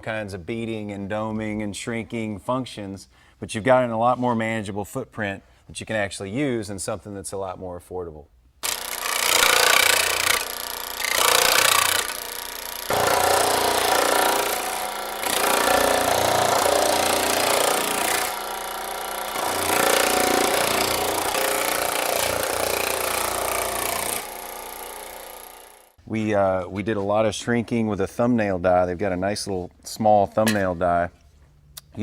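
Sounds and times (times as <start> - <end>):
power hammer hammering sheet metal: 9.1 - 25.6.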